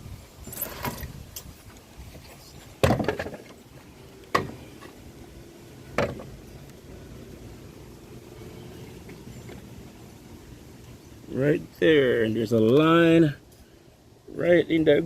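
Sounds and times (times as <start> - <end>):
wooden board knocks and clunks: 2.8 - 3.6, 4.3 - 4.6, 5.9 - 6.4.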